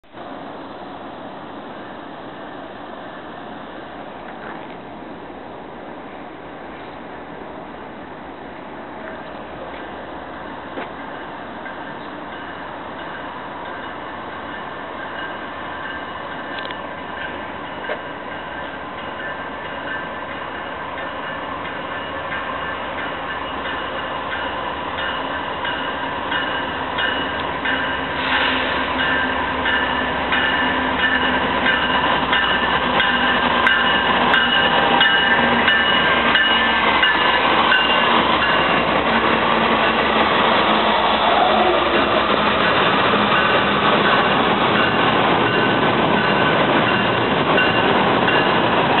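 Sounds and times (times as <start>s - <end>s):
train wheels clattering over rail joints: 23.0s - 49.0s.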